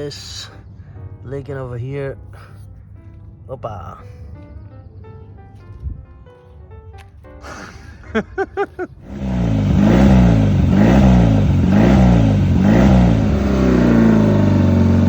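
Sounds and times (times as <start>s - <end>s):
motorcycle engine starting and revving: 9.0s - 15.0s.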